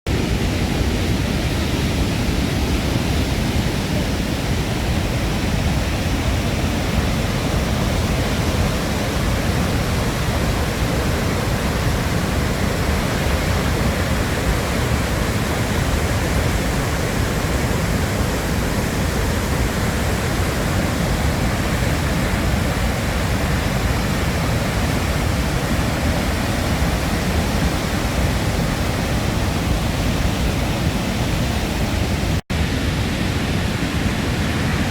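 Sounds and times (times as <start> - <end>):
waterfall rushing: 0.1 - 34.9.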